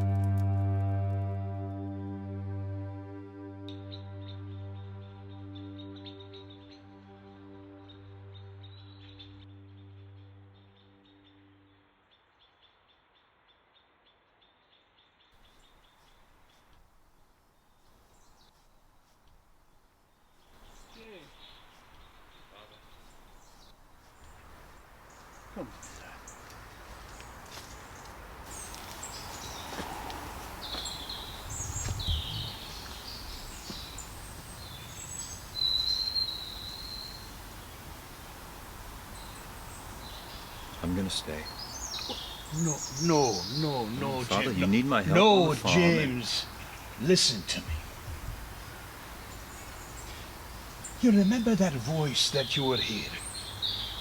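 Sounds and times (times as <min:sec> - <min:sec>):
faint bird chirp: 0:20.1 - 0:38.0, 0:39.1 - 0:54.0.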